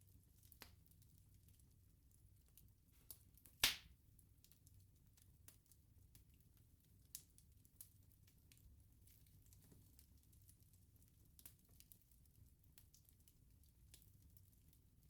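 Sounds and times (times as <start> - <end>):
bonfire crackling and popping: 0.0 - 15.0
low rumble of burning: 0.0 - 15.0.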